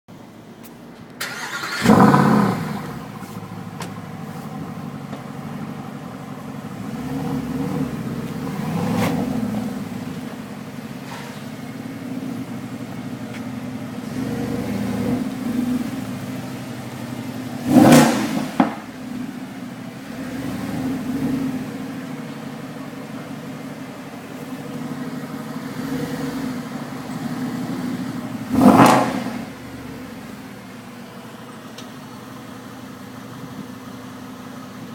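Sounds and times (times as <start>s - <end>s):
car engine idling: 0.1s - 34.9s
engine revving: 1.2s - 4.8s, 6.6s - 10.4s, 13.9s - 22.3s, 24.5s - 30.4s.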